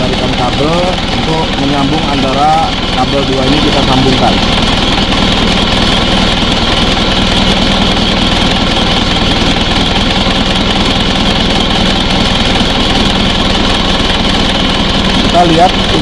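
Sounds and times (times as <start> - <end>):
diesel engine idling: 0.0 - 16.0.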